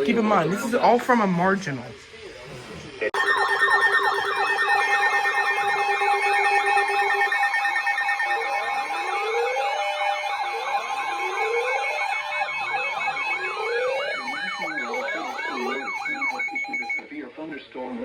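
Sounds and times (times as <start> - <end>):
wailing sirens: 3.2 - 17.0
yelping sirens: 3.2 - 17.0
pulsing siren tone: 3.2 - 17.1.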